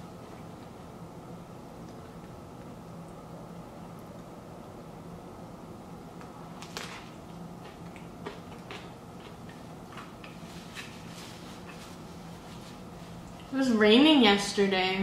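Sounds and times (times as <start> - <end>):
faint hiss and low hum: 0.0 - 15.0
chewing and crunching: 6.6 - 12.1.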